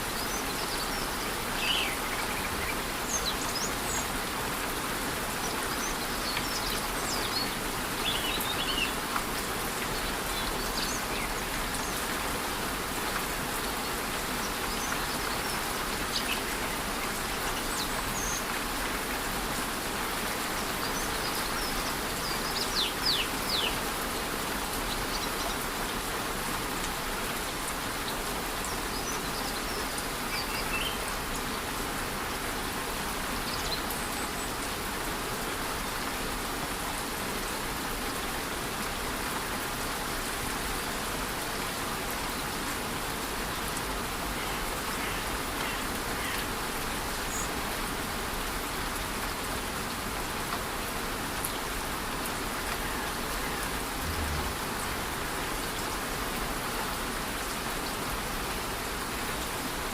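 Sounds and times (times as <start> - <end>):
light rain falling: 0.0 - 59.9
waterfall rushing: 42.8 - 59.9
birds chirping: 44.4 - 47.7.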